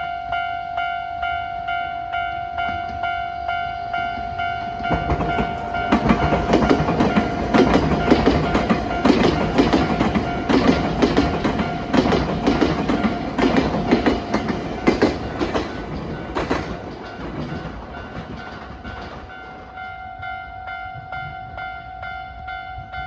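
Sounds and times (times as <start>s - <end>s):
level-crossing bell dinging: 0.0s - 16.5s
train wheels clattering: 4.8s - 19.8s.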